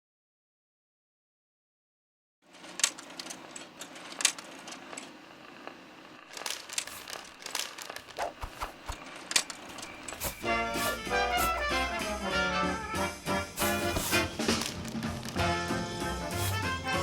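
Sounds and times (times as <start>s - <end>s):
small clicks and rustles: 2.5s - 10.4s.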